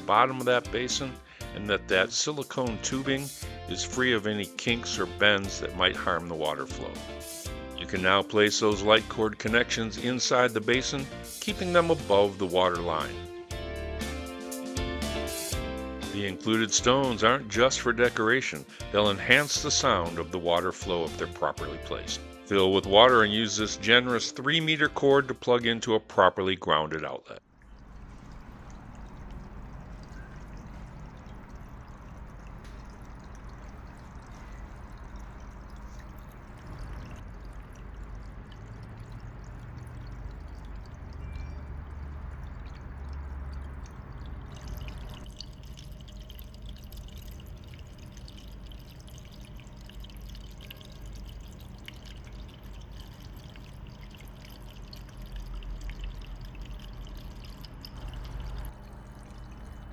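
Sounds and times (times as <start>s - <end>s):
fountain water trickling and splashing: 2.9s - 7.5s, 10.6s - 13.2s, 18.8s - 23.3s, 27.6s - 59.9s.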